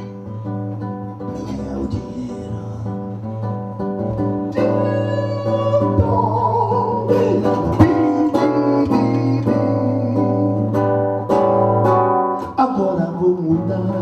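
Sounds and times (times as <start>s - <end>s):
acoustic guitar strumming samba rhythm: 0.0s - 14.0s.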